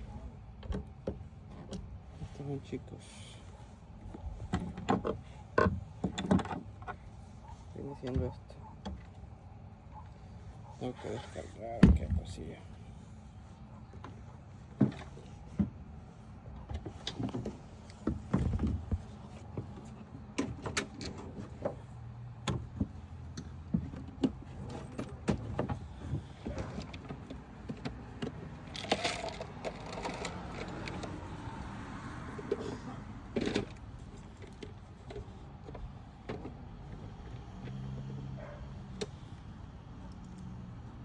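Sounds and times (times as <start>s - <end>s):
rustling and scraping: 10.0s - 39.4s
tools clicking and rattling: 26.5s - 31.3s.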